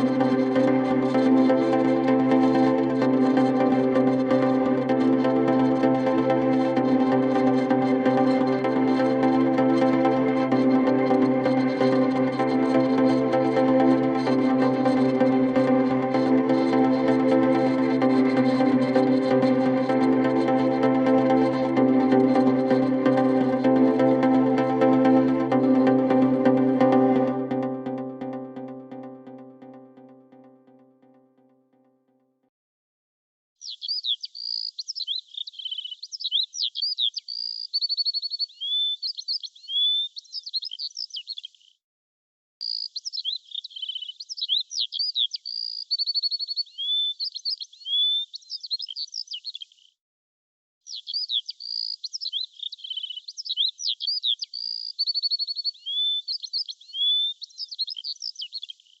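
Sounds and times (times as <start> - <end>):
songbird singing: 33.6 - 41.6, 42.6 - 49.7, 50.9 - 59.0.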